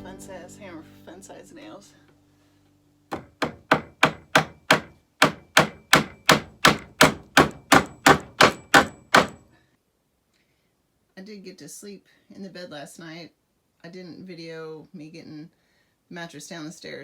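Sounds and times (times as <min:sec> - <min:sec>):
hammer driving nails into wood: 0:03.1 - 0:09.4.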